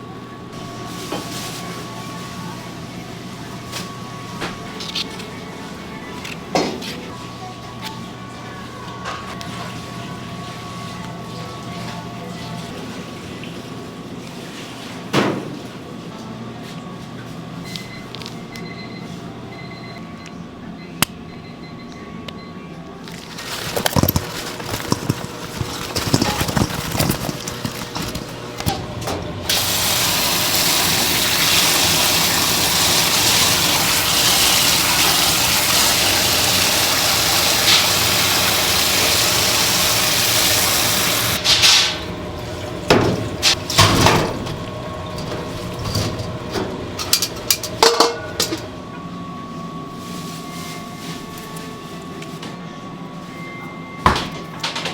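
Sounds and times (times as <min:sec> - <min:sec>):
kitchen utensils clattering: 0:23.1 - 0:48.8
tap water running: 0:23.1 - 0:48.9.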